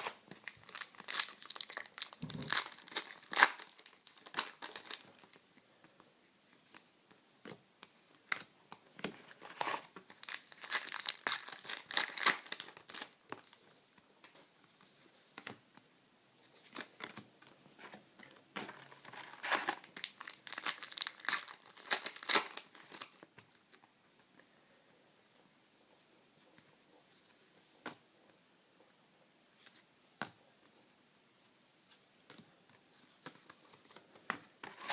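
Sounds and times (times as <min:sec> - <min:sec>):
wrappers tearing and crinkling: 0:00.0 - 0:05.0, 0:09.6 - 0:13.2, 0:19.2 - 0:23.2.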